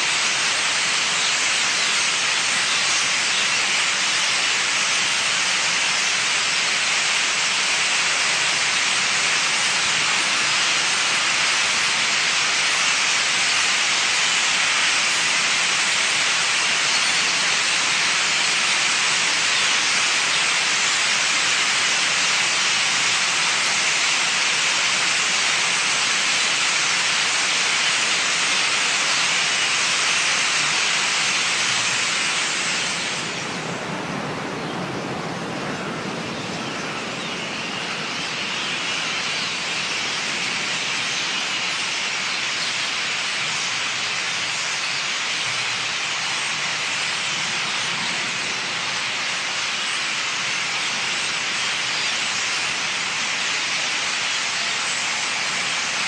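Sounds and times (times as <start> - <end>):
steady hiss: 0.0 - 56.0.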